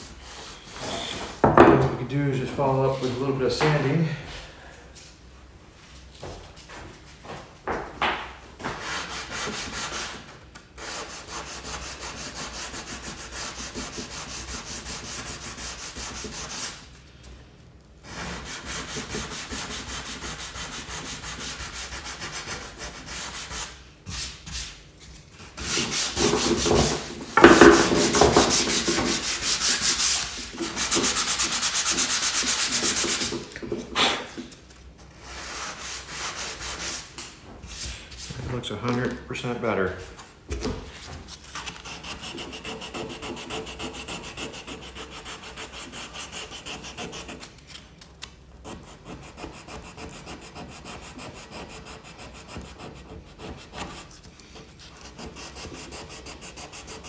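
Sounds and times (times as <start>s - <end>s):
sandpaper rasping on wood: 8.8s - 16.8s, 18.1s - 24.8s, 25.5s - 34.4s, 35.3s - 37.1s, 41.8s - 47.5s, 48.7s - 57.0s.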